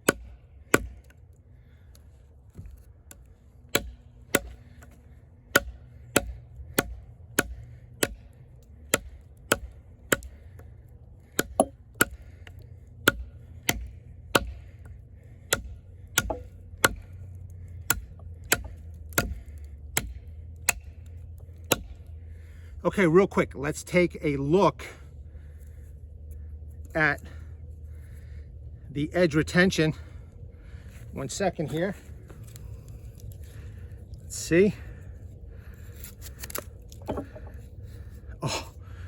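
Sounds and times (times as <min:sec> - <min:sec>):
knife chopping into wood: 0:00.0 - 0:01.1, 0:02.6 - 0:08.3, 0:08.9 - 0:10.3, 0:11.3 - 0:12.2, 0:13.0 - 0:14.7, 0:15.5 - 0:17.2, 0:17.8 - 0:21.0, 0:21.6 - 0:22.0, 0:36.0 - 0:37.6.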